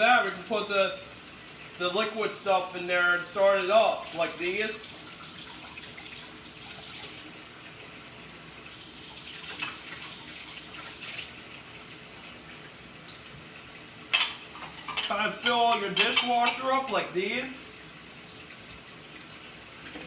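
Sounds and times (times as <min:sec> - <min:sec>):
dishes clinking: 0:14.1 - 0:17.1
dishware clattering: 0:14.1 - 0:17.1.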